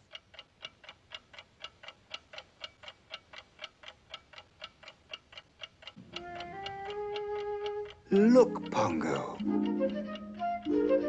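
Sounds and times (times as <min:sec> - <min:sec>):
clock ticking: 0:00.0 - 0:11.0
quiet sustained music notes: 0:06.0 - 0:11.0.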